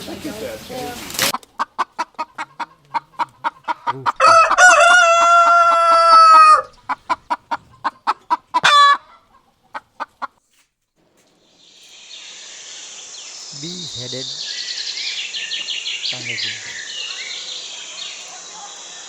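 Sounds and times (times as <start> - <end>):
chicken clucking: 0.0 - 10.4
chicken crowing call: 1.9 - 6.8, 8.5 - 9.3.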